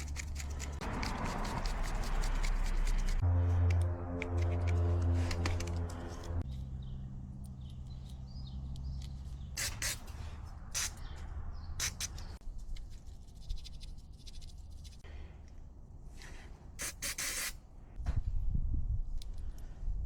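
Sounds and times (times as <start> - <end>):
short hissing spray bursts: 9.6 - 11.0, 16.8 - 17.6.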